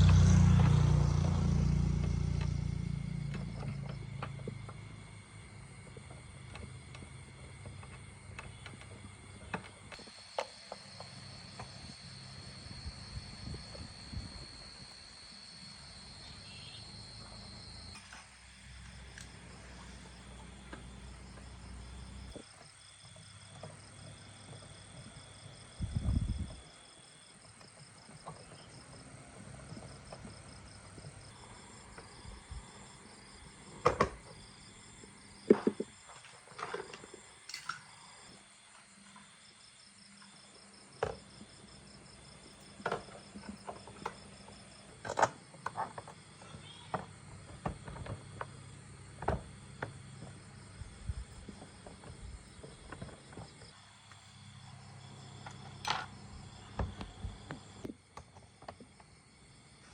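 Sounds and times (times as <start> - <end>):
faint high-pitched chirping: 15.8 - 18.1, 46.4 - 47.0
metal tools knocking and clinking: 37.5 - 37.9.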